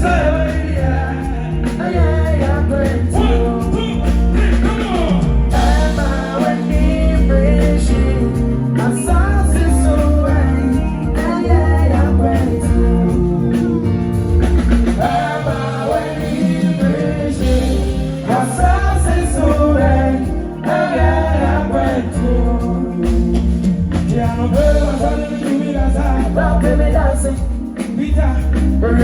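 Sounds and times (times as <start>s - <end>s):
heavy bass line: 0.0s - 29.0s
live band playing: 0.0s - 29.0s
person singing: 0.0s - 29.0s.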